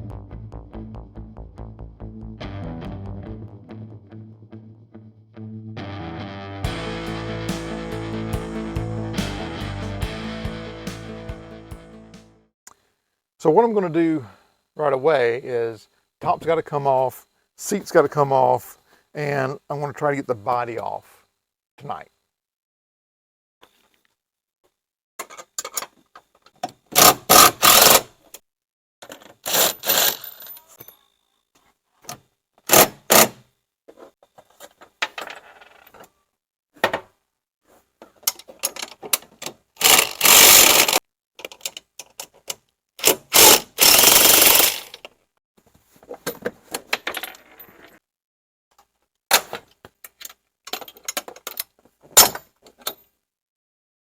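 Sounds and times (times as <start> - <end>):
impact driver bursts: 27.0 - 28.1, 39.8 - 41.0, 43.0 - 44.9.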